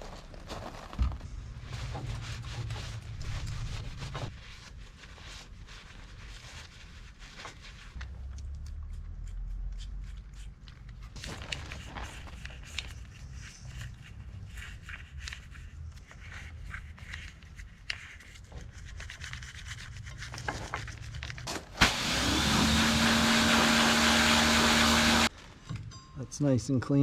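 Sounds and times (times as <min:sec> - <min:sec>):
motor hum: 0:21.8 - 0:25.3.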